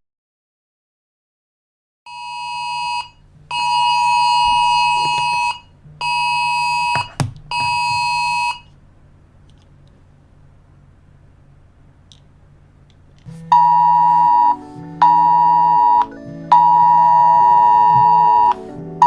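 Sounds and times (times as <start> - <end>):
phone alarm tone pulses: 2.1 - 8.7, 13.5 - 18.6
low hum: 2.1 - 19.0.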